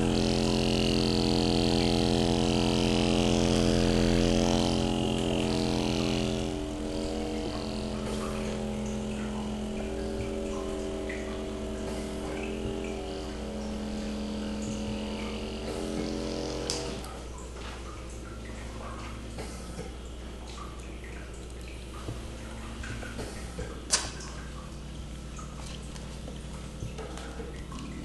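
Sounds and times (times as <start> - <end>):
air hissing: 0.0 - 17.1
suction pump humming: 0.0 - 28.0.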